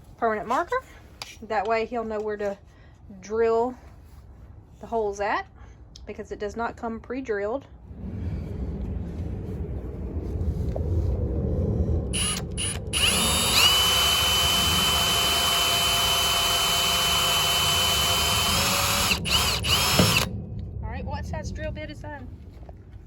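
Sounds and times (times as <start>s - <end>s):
low rumbling: 7.6s - 23.0s
power drill whining: 12.2s - 20.3s.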